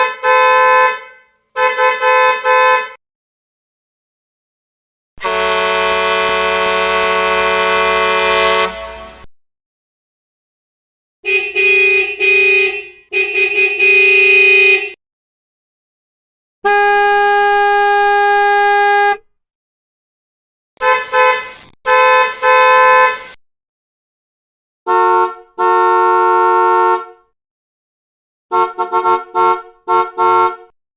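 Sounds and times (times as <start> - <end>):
car horns honking: 0.0 - 3.0, 5.2 - 9.3, 11.2 - 15.0, 16.6 - 19.2, 20.8 - 23.3, 24.9 - 27.3, 28.5 - 30.8.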